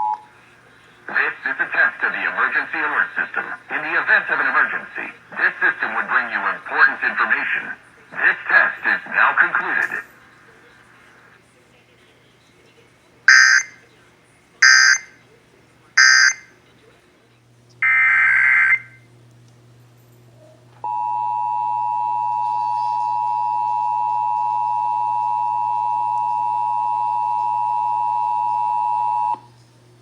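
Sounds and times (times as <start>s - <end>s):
two-tone attention signal: 13.3s - 13.8s, 14.6s - 15.1s, 16.0s - 16.4s.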